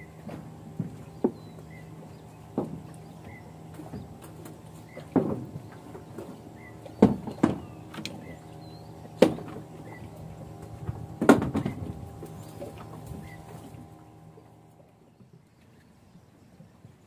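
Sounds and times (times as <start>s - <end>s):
steady low hum: 0.0s - 16.9s
sharp knocks: 10.8s - 11.9s.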